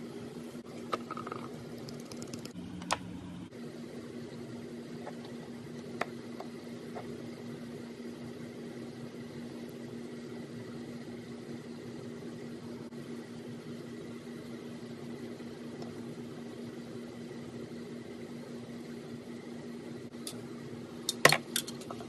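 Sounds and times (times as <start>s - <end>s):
machine hum with faint whine: 0.0s - 22.0s.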